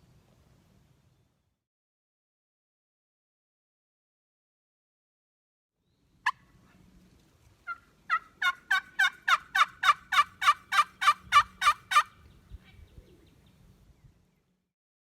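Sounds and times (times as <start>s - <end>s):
turkey yelps: 6.2s - 6.8s, 7.6s - 12.8s.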